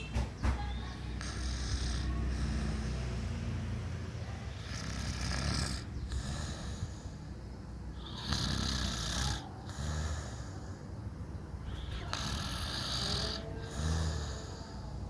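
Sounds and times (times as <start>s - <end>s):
person snoring: 12.1s - 14.8s.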